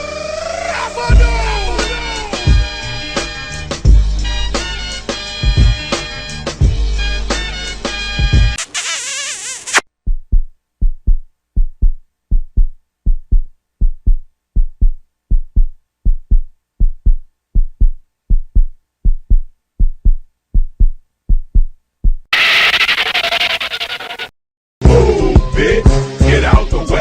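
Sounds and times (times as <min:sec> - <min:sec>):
loud music: 0:01.1 - 0:08.6
heartbeat thumps: 0:05.4 - 0:05.9, 0:10.0 - 0:22.3.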